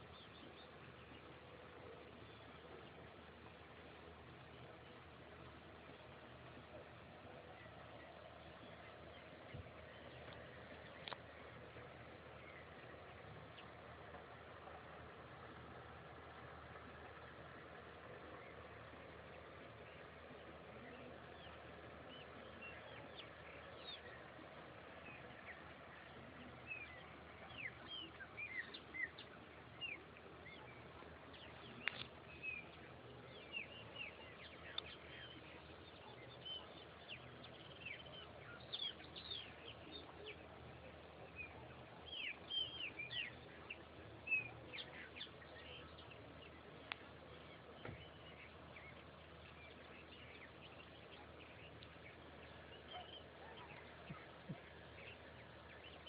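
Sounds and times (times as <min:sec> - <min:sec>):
birds chirping: 0:00.0 - 0:56.0
faint outdoor background: 0:00.0 - 0:56.0.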